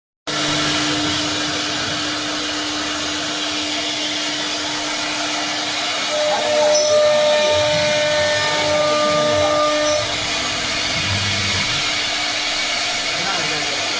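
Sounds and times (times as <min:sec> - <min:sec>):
machine whirring with hum: 0:00.3 - 0:13.9
higher machine tone: 0:04.6 - 0:13.4.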